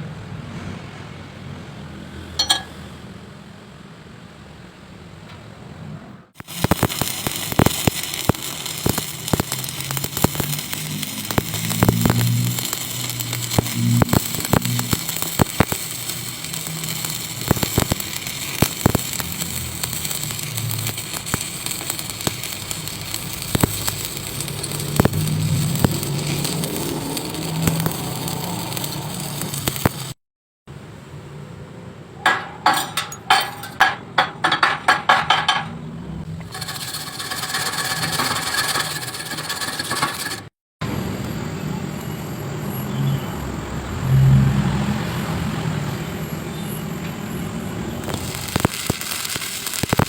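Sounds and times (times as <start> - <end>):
arc welding crackling hiss: 6.4 - 30.2, 36.4 - 40.5, 47.9 - 50.0
sharp welding pops: 6.4 - 30.2, 48.0 - 50.0.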